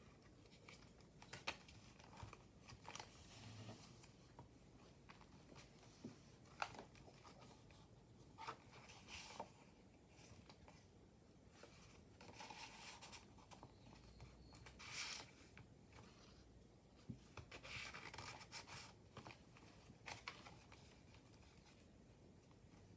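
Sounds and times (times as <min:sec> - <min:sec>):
paper pages rustling: 0:11.5 - 0:16.4, 0:17.2 - 0:21.9.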